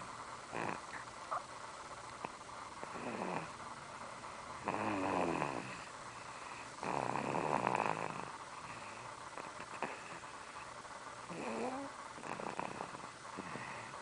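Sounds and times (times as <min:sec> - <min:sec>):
rattling snores: 0:00.5 - 0:01.0, 0:02.8 - 0:03.6, 0:04.6 - 0:06.0, 0:06.8 - 0:08.8, 0:09.4 - 0:10.3, 0:11.3 - 0:14.0.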